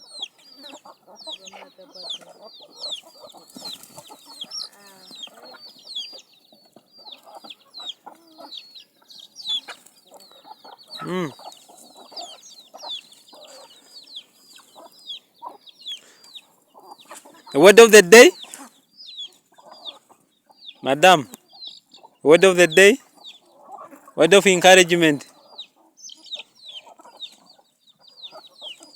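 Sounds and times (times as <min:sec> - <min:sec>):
chickens clucking: 0:00.0 - 0:28.9
chicks peeping: 0:00.0 - 0:28.9
chicken squawk: 0:07.0 - 0:13.9.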